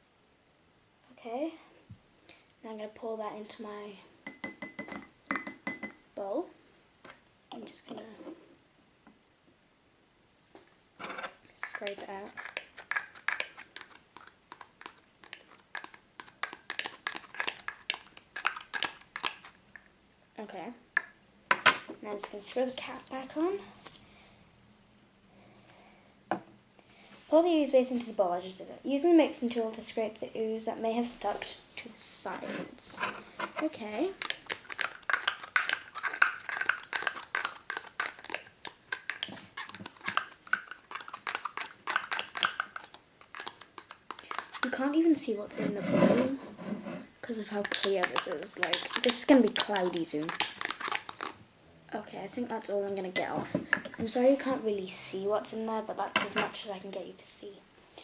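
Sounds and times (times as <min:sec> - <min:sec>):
tool scraping plastic cup: 0:45.5 - 0:47.1
tool scraping slime in a bowl: 0:45.5 - 0:51.3.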